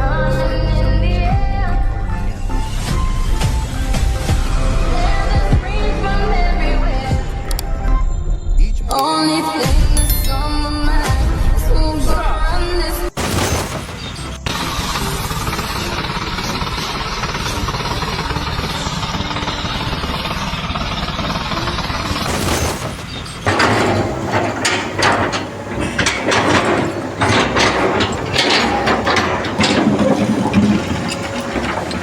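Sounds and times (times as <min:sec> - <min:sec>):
heavy engine running: 0:14.2 - 0:32.0
metal clanking and knocking: 0:22.8 - 0:32.0.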